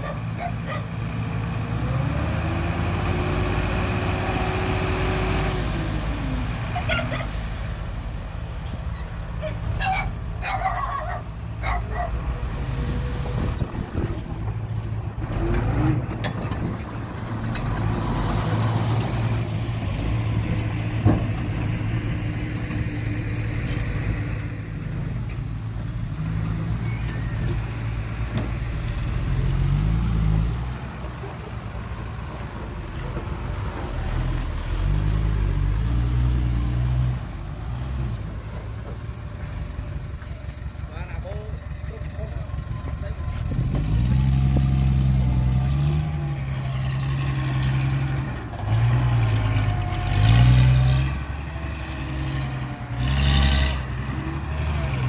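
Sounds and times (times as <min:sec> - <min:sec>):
heavy diesel engine revving: 0:00.8 - 0:08.8, 0:40.7 - 0:55.0.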